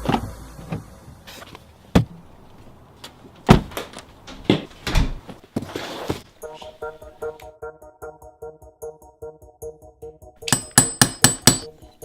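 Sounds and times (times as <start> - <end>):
knocks and clicks of metal parts: 10.4 - 11.7.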